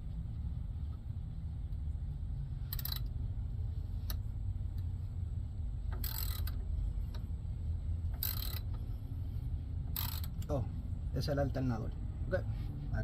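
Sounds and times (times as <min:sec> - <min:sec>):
steady low rumble: 0:00.0 - 0:13.0
socket wrench clicking and rattling: 0:02.7 - 0:03.2, 0:05.9 - 0:07.3, 0:08.1 - 0:08.8, 0:09.9 - 0:10.5.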